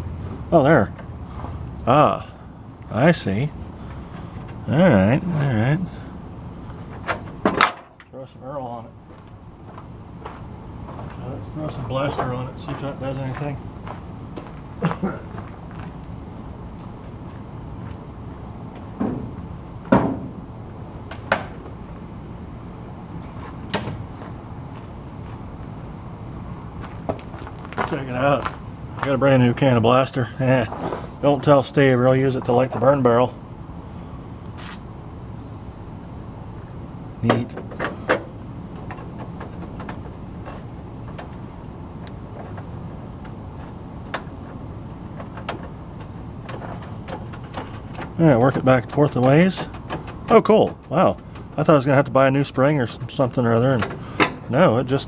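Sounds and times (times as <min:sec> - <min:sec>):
low steady rumble: 0:00.0 - 0:55.0
tools knocking and clunking: 0:19.0 - 0:20.4, 0:37.2 - 0:51.9, 0:53.1 - 0:54.5.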